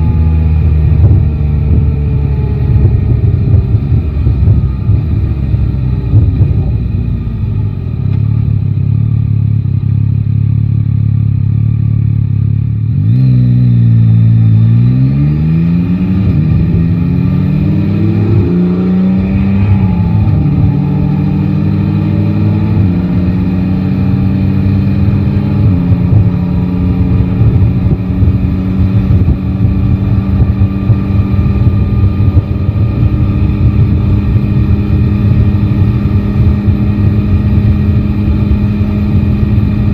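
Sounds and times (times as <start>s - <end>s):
wind rumble on microphone: 0.0s - 8.2s, 15.6s - 39.9s
motorcycle engine accelerating through gears: 0.0s - 39.9s.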